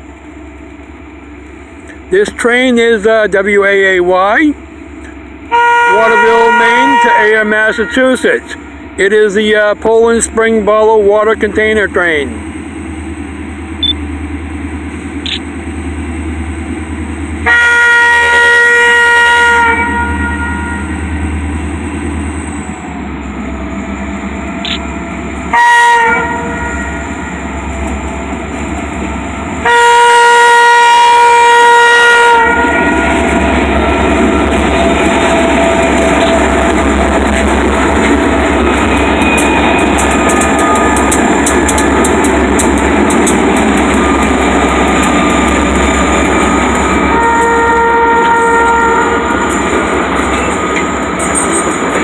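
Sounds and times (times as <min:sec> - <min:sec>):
passing train rumble: 0:00.0 - 0:52.0
locomotive air horn blasts: 0:05.5 - 0:08.6, 0:17.4 - 0:21.3, 0:25.5 - 0:27.6, 0:29.6 - 0:41.2, 0:46.7 - 0:49.8.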